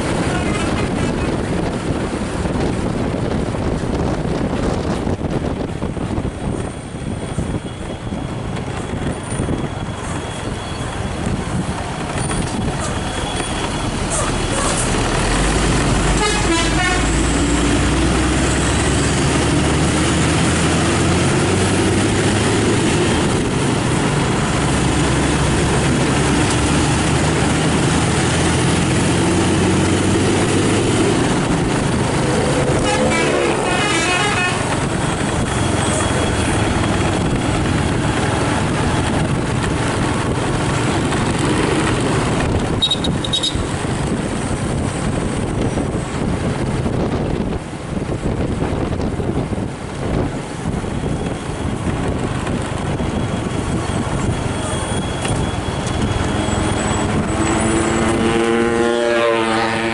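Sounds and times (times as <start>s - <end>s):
bus engine running: 0.0s - 59.9s
warbling multi-tone horn: 16.1s - 17.3s, 32.3s - 34.8s, 56.8s - 59.9s.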